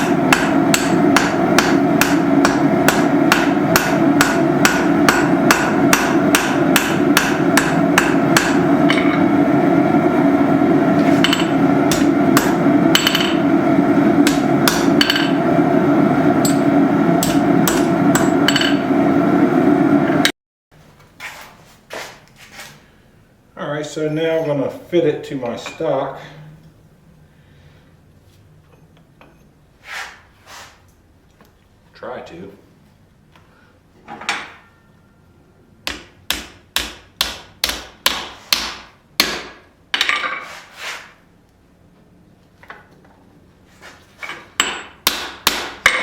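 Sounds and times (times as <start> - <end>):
hammer striking steel on anvil: 0.0 - 9.4, 11.0 - 13.5, 14.2 - 15.5, 16.4 - 18.9, 35.8 - 40.4, 44.6 - 46.0
steady drone: 0.0 - 20.3.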